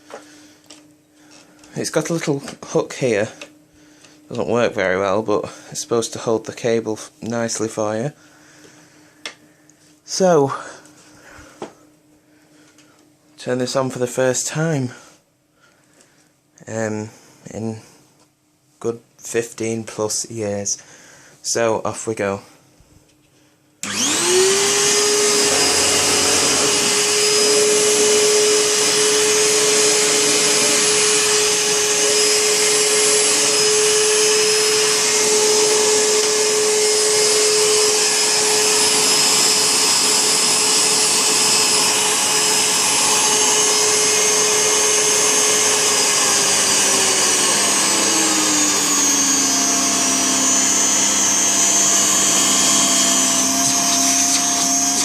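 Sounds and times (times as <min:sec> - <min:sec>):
vacuum cleaner motor whine: 0:23.8 - 0:55.0.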